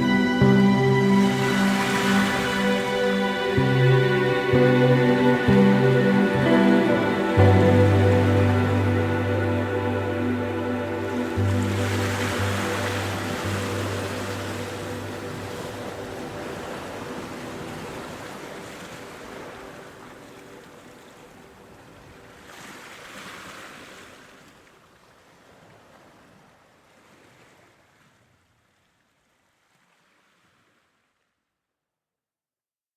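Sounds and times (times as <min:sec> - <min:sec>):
music track: 0:00.0 - 0:20.0
sea waves washing onto shore: 0:00.0 - 0:24.6.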